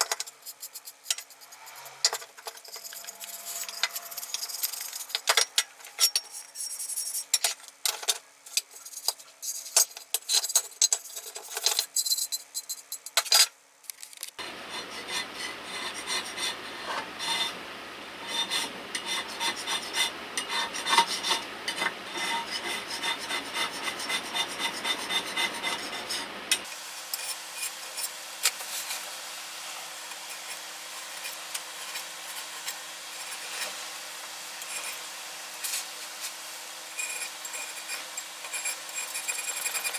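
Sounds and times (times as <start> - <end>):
hand scraping metal: 0.0 - 7.4, 14.4 - 26.7.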